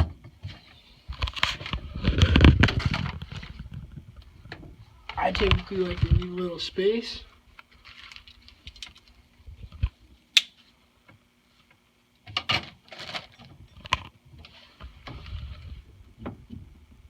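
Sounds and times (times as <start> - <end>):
rustling: 0.5 - 9.9.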